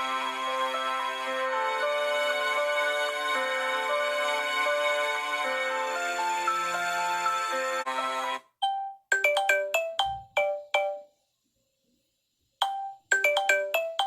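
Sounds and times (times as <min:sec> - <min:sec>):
ringtone melody of bell-like notes: 0:08.6 - 0:11.2, 0:12.6 - 0:14.0
sustained ringtone: 0:08.6 - 0:11.2, 0:12.6 - 0:14.0.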